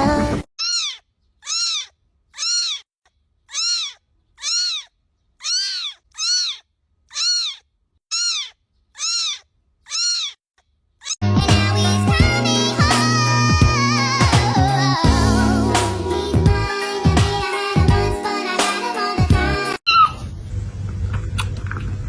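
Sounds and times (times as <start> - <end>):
kitten meowing: 0.6 - 2.8, 3.5 - 10.4
music: 11.2 - 19.8.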